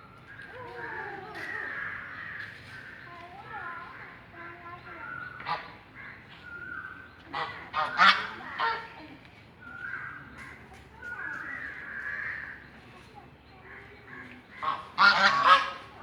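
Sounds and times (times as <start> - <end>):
birds whistling faintly: 0.0 - 15.0
ducks quacking: 7.3 - 9.0, 13.7 - 16.0.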